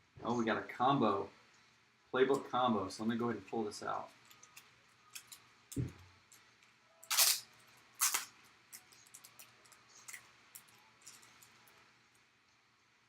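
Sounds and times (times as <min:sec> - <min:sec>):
trading card packaging handling: 0:07.0 - 0:11.7.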